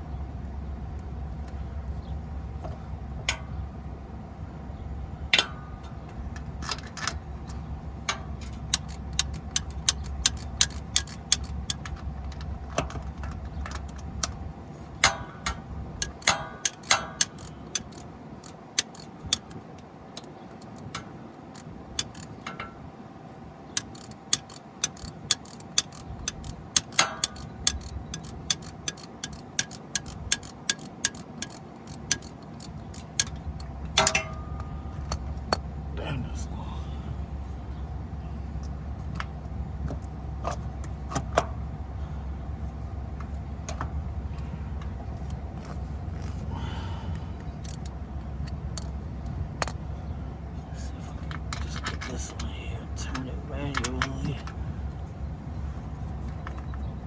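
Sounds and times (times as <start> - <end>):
ratchet wrench clicking: 8.4 - 12.0, 13.7 - 14.3, 16.0 - 19.6, 20.2 - 22.4, 23.7 - 34.1, 47.6 - 49.0
metal tools clinking: 16.0 - 19.6, 23.8 - 34.6.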